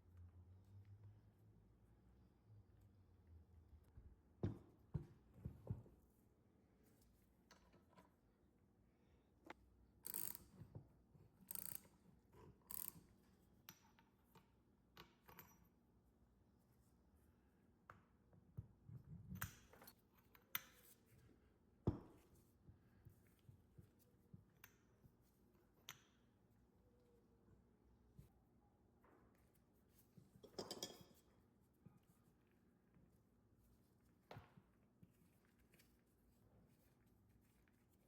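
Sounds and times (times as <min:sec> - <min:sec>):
small parts and tools handled: 0:29.0 - 0:32.5.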